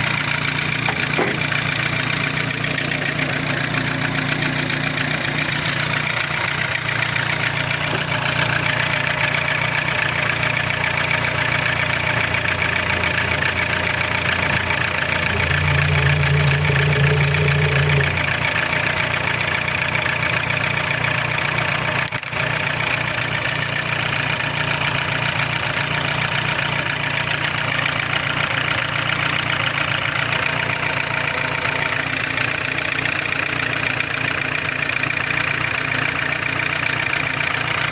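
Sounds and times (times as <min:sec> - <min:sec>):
car engine idling with knock: 0:00.0 - 0:37.9.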